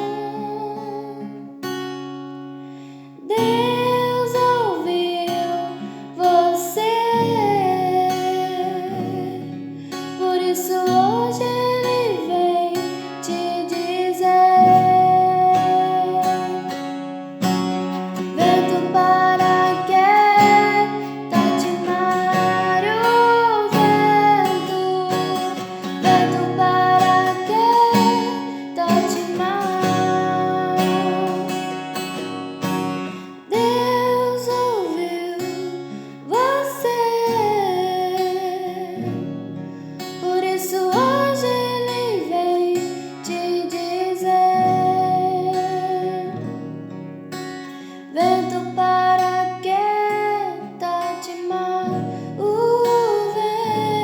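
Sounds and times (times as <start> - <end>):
strummed acoustic guitar: 0.0 - 54.0.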